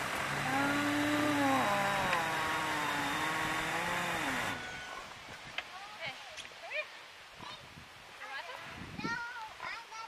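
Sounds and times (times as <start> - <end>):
truck engine pulling away: 0.0 - 4.8.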